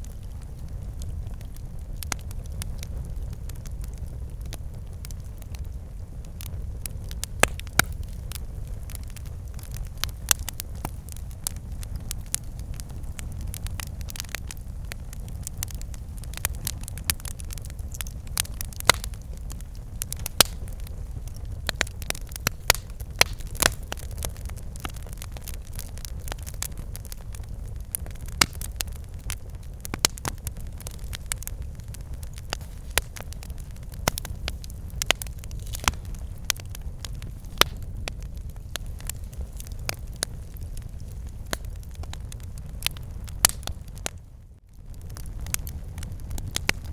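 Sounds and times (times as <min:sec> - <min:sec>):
campfire rumble: 0:00.0 - 0:46.9
wood crackling and popping: 0:00.0 - 0:46.9.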